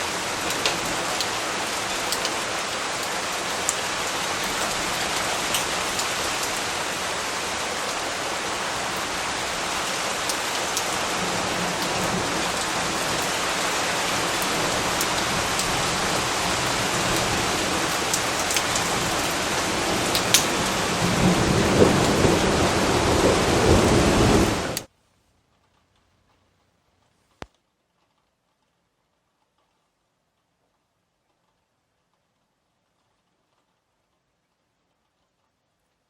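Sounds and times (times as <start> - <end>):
heavy rain hissing: 0.0 - 24.9
low rumble of thunder: 0.0 - 24.9
sharp rain drops: 0.0 - 24.9.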